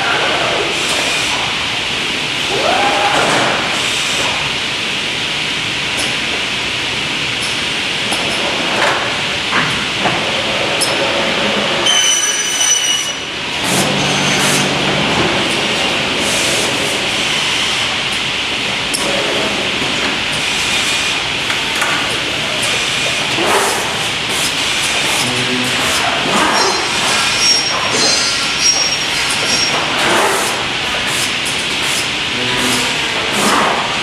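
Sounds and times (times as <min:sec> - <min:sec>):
machine hiss and clatter: 0:00.3 - 0:12.0, 0:13.0 - 0:34.0
high squeal: 0:11.8 - 0:13.3, 0:26.6 - 0:29.8.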